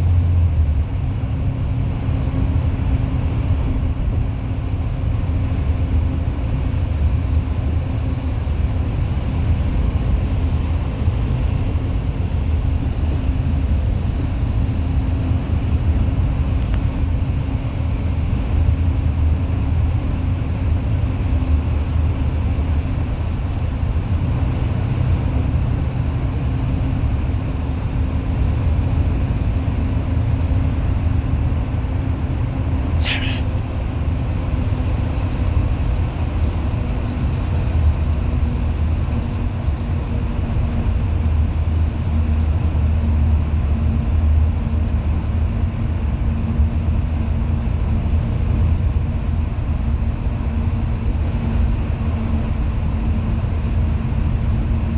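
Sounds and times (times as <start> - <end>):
bus engine and road rumble: 0.0 - 54.9
faint steady hum: 31.6 - 34.0.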